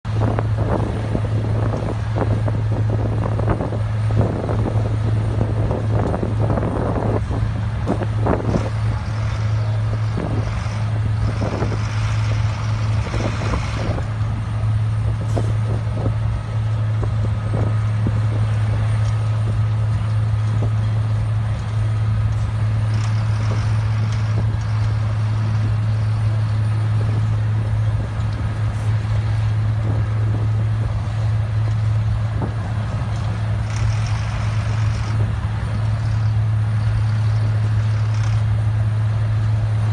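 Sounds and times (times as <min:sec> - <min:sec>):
heavy engine drone: 0:00.0 - 0:39.9
machine knocking and clatter: 0:33.1 - 0:38.5.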